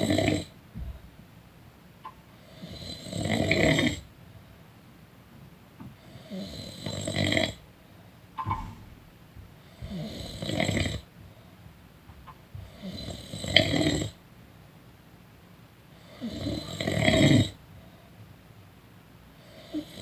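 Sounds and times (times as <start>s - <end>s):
short high-pitched sound: 8.4s - 9.2s.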